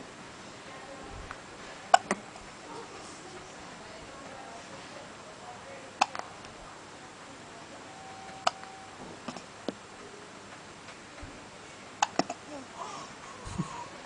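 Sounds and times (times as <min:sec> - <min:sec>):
baby hiccuping: 0:01.9 - 0:02.2, 0:08.4 - 0:09.5, 0:12.0 - 0:12.6.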